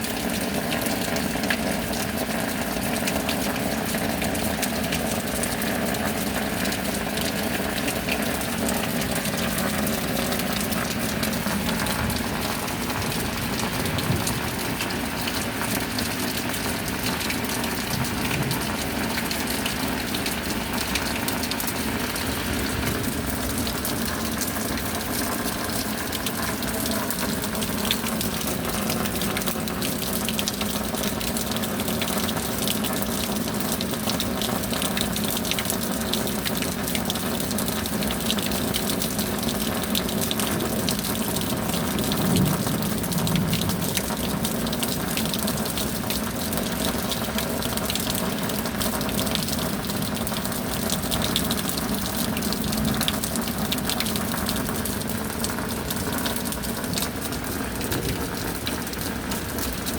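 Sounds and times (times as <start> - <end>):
heavy rain: 0.0 - 59.9
running water gushing: 0.0 - 59.9.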